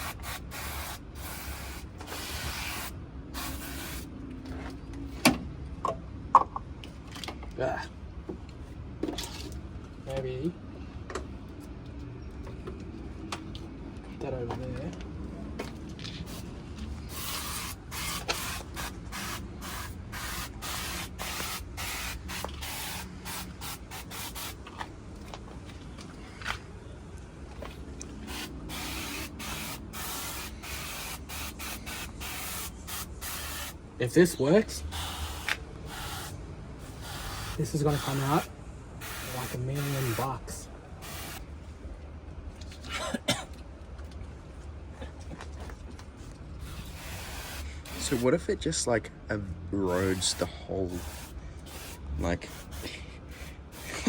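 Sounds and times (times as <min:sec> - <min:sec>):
short spray bursts: 0:00.0 - 0:04.1, 0:17.1 - 0:24.6, 0:28.2 - 0:33.8, 0:34.9 - 0:40.3, 0:41.0 - 0:41.4, 0:46.6 - 0:48.3, 0:50.1 - 0:54.0
person coughing: 0:42.8 - 0:43.6.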